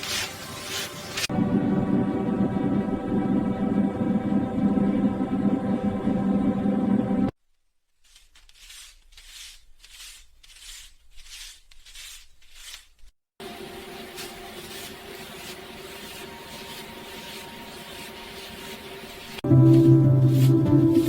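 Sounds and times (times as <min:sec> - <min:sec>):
calm background music: 0:19.4 - 0:21.0.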